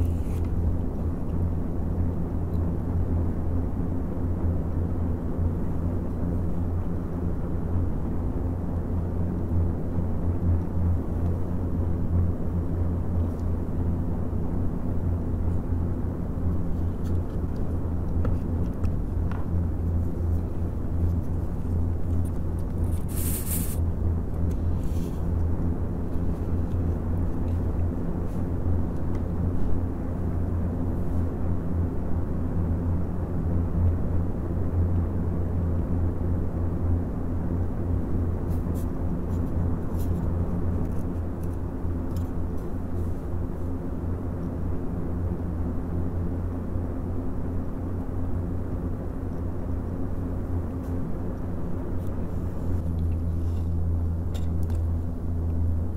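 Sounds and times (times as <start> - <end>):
fans whooshing and humming: 0.0 - 55.9
brief hiss: 23.0 - 23.8.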